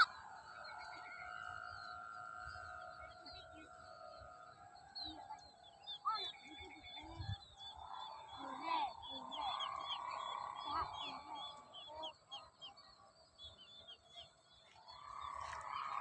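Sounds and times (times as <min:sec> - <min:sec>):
kite hummer droning: 0:14.3 - 0:16.0.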